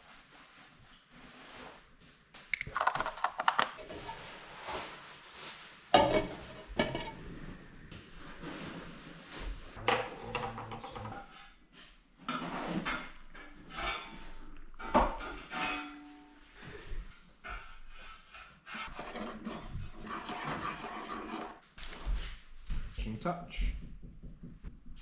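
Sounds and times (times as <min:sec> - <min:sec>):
pots and utensils clattering: 0:02.7 - 0:08.9, 0:09.8 - 0:21.6.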